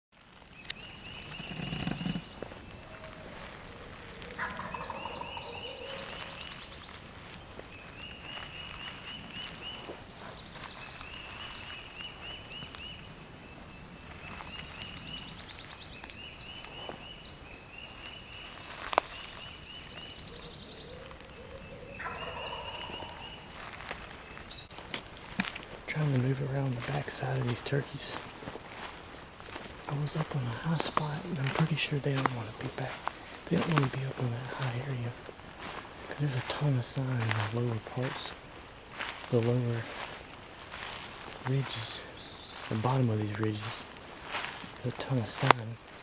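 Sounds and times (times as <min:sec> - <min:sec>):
songbirds singing: 0:00.2 - 0:46.0
wild turkey gobbling: 0:01.4 - 0:06.7, 0:20.3 - 0:24.0.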